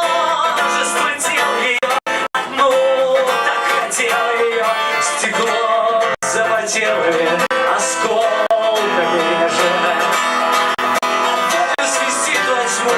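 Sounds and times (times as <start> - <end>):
acoustic guitar: 0.0 - 12.9
person singing live: 0.0 - 12.9.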